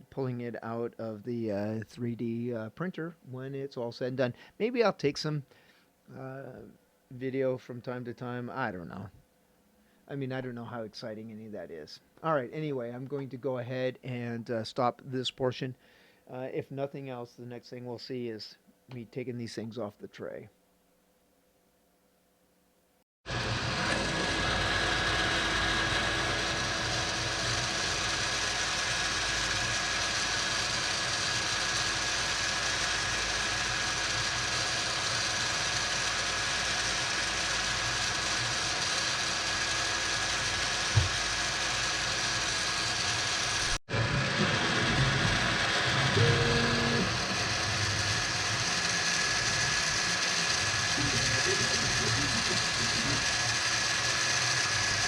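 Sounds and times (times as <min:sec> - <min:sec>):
printer fan hum: 0:23.3 - 0:55.0
stepper motors whirring and ratcheting: 0:23.4 - 0:55.0.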